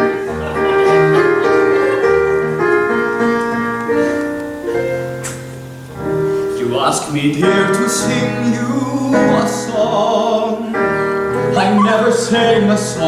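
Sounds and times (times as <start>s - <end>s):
piano playing sustained chords: 0.0s - 13.0s.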